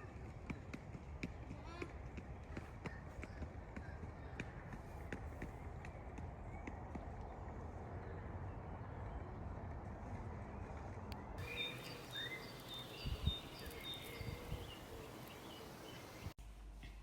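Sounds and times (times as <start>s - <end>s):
small birds chirping: 11.2s - 16.4s
background hiss: 11.4s - 16.4s.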